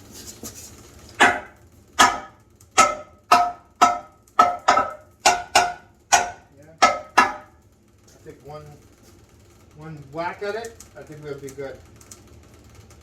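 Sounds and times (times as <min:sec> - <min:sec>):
hammer striking metal: 0:01.2 - 0:07.6.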